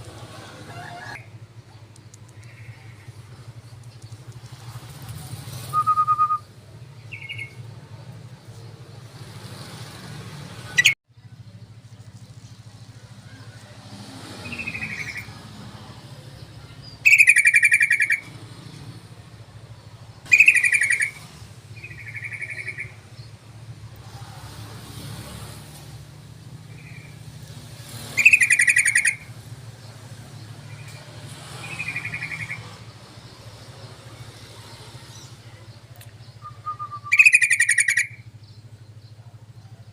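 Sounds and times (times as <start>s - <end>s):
bird bubbling chatter: 17.0s - 18.3s, 20.3s - 21.2s, 28.2s - 29.3s, 36.4s - 38.2s.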